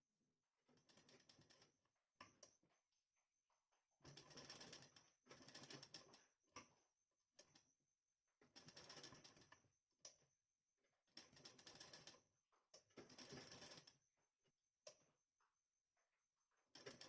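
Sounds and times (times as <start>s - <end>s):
faint sewing machine stitching: 0.7s - 1.8s, 4.0s - 7.8s, 8.4s - 10.3s, 11.0s - 14.2s, 16.6s - 17.0s.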